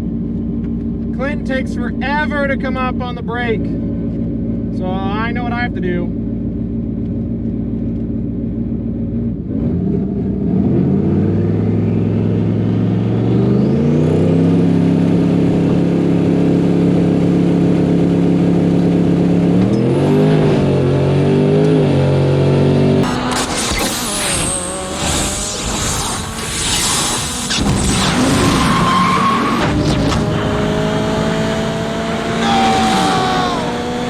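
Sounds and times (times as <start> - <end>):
car engine revving: 8.6 - 34.0.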